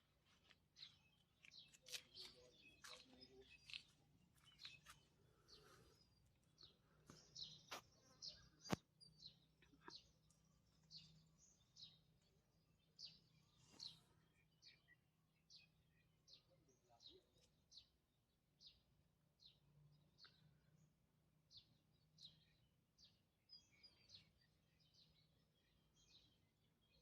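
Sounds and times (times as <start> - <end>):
faint bird chirps: 0.8 - 18.0.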